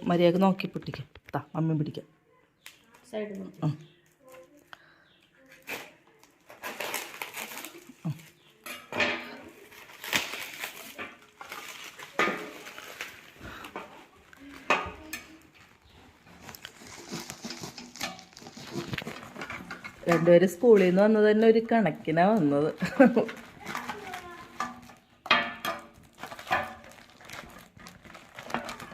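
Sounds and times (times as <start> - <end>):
wrapping rustling and tearing: 5.4 - 8.6, 9.4 - 20.1, 22.2 - 28.9.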